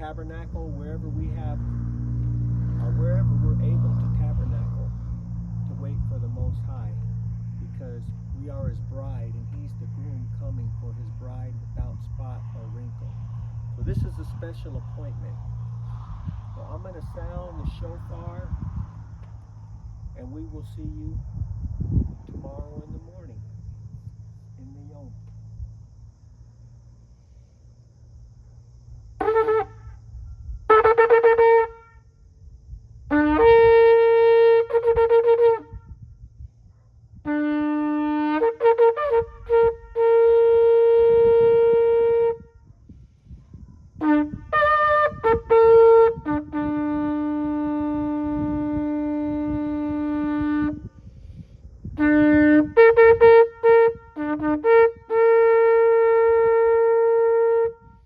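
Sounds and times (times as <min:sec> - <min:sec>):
shofar blasts: 0:29.2 - 0:32.2, 0:33.1 - 0:36.1, 0:37.2 - 0:42.8, 0:44.0 - 0:58.0.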